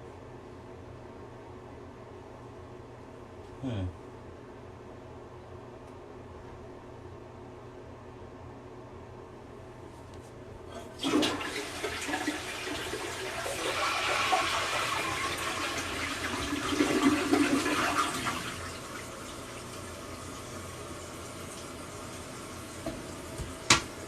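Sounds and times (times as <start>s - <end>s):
toilet flushing: 10.7s - 24.0s
toilet tank refilling hiss: 10.8s - 24.0s.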